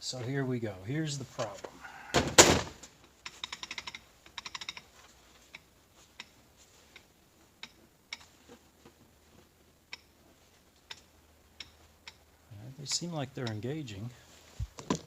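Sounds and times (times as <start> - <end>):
metal clutch parts clicking: 3.0 - 4.9.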